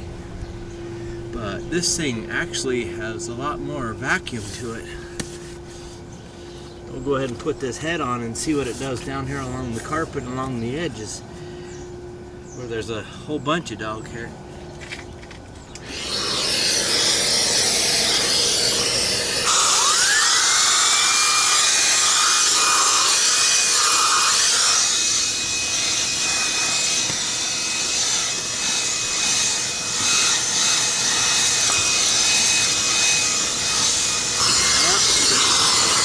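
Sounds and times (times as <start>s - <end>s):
high-pitched vacuum whine: 0.0s - 11.0s, 15.8s - 36.0s
vacuum cleaner on carpet: 15.8s - 36.0s.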